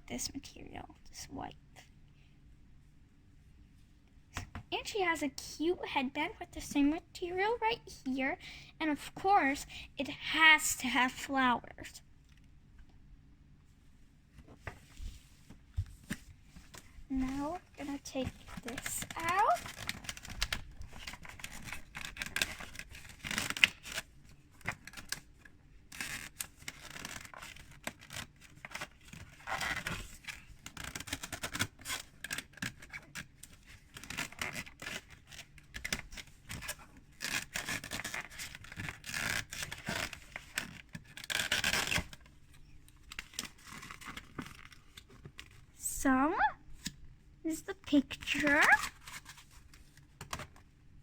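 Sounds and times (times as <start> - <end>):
packaging rustle: 16.0 - 45.7, 48.6 - 50.7
packaging scratching and clicking: 16.7 - 45.6, 48.3 - 50.7.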